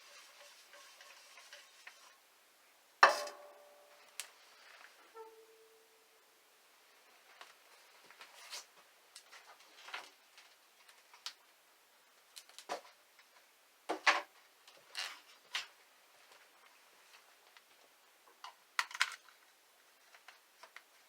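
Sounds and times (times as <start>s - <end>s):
objects knocking and clattering: 3.0s - 4.1s.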